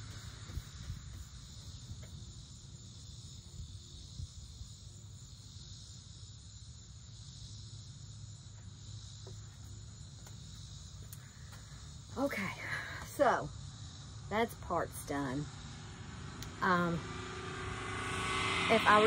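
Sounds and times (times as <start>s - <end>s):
crickets chirring: 0.0s - 19.0s
low rumble: 15.5s - 19.0s.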